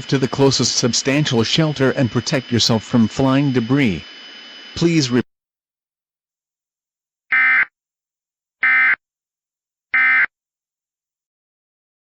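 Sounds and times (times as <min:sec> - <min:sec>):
digital data tone bursts: 0:00.0 - 0:05.2.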